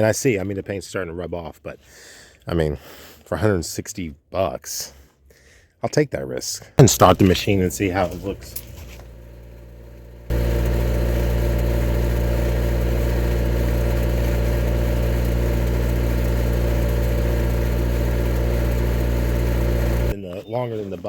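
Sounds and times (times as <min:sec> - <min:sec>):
excavator engine running: 0:06.8 - 0:20.2.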